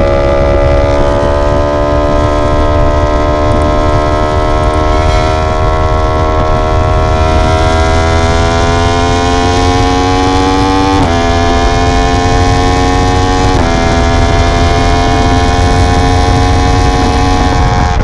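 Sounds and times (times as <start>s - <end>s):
motorcycle engine accelerating: 0.0s - 18.0s
wind rumble: 0.0s - 18.0s.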